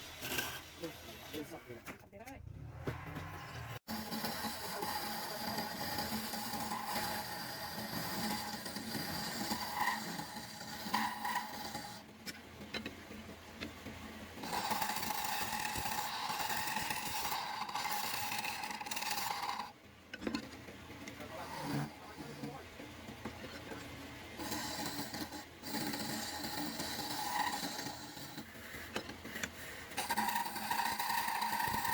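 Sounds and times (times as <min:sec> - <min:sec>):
tool scraping wood: 0:02.8 - 0:12.1, 0:14.4 - 0:20.5, 0:21.1 - 0:22.6, 0:24.4 - 0:31.9.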